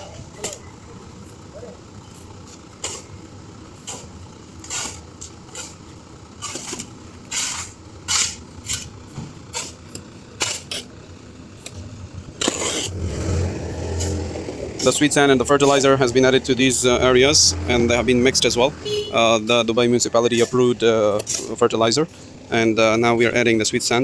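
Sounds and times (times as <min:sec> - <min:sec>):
low engine hum: 0:00.0 - 0:24.0
sand scraping with shovel: 0:03.8 - 0:05.8, 0:06.4 - 0:08.9, 0:09.5 - 0:10.9, 0:12.4 - 0:16.0.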